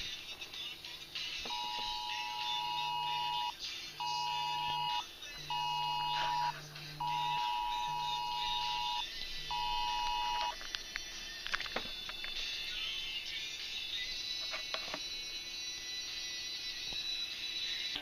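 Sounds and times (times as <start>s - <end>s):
harsh two-tone alert beeping: 1.5s - 10.6s
phone vibration buzz: 1.5s - 10.6s.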